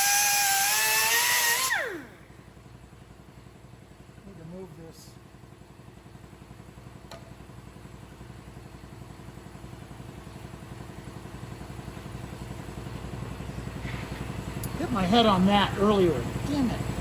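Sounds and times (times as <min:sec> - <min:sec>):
machine running with fast pulse: 0:00.0 - 0:02.3.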